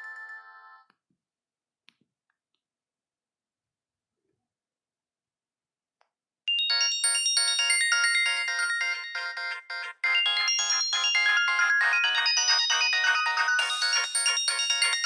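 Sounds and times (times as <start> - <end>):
polyphonic ringtone tune: 0.0 - 0.8, 6.5 - 15.0.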